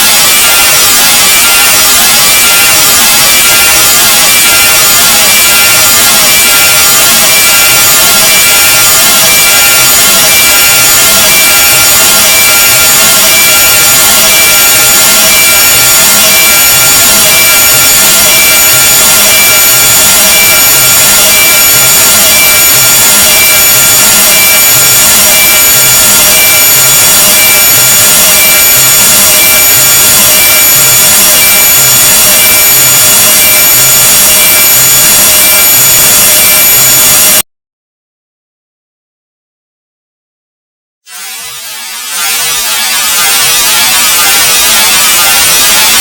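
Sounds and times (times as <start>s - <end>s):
high whistling tones: 0.0s - 37.4s, 41.1s - 46.0s
dense harsh hiss: 41.1s - 46.0s.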